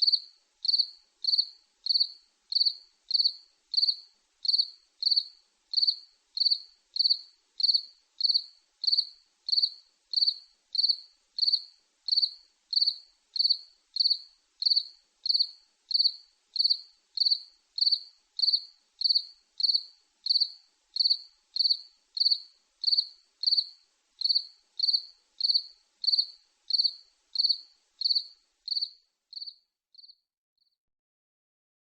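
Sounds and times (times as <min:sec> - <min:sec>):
cricket chirping: 0:00.0 - 0:30.2.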